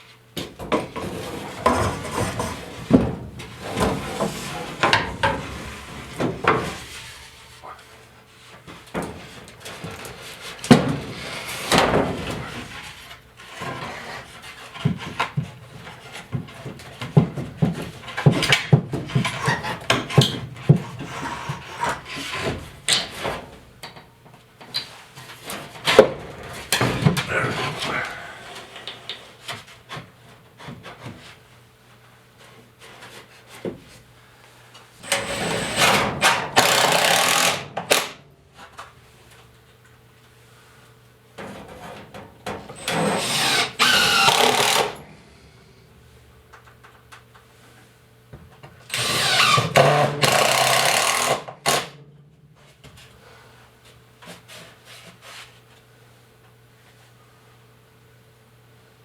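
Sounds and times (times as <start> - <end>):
knocks and scraping of woodwork: 0.4 - 31.5, 32.4 - 34.1, 34.8 - 39.5, 41.4 - 45.0, 53.9 - 55.9.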